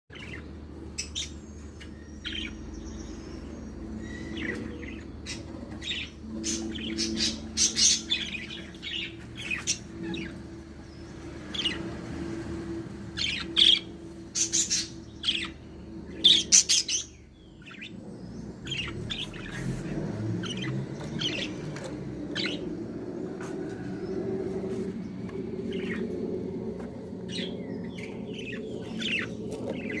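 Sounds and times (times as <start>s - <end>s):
low steady hum: 0.1s - 30.0s
budgerigars chirping: 1.0s - 10.4s, 13.2s - 22.7s, 27.3s - 30.0s.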